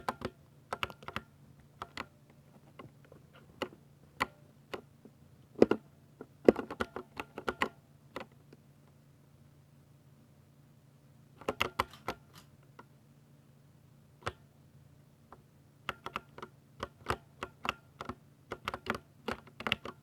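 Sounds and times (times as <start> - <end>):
mechanical keyboard typing: 0.0 - 2.1, 6.4 - 8.3, 11.4 - 12.3, 15.9 - 20.0.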